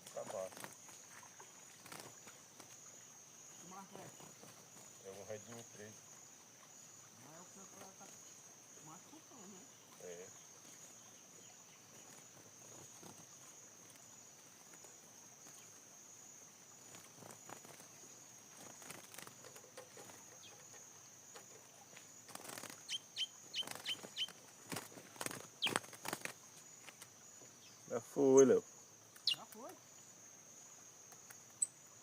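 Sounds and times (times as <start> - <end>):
high insect drone: 0.0 - 32.0
sharp knocks and rustles: 18.6 - 22.8.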